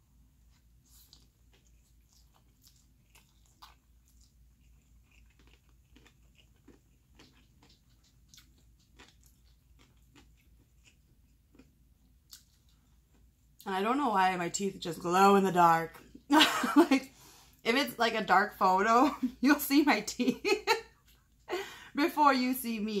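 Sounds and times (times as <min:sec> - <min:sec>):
person chewing noodles: 0:00.2 - 0:13.6.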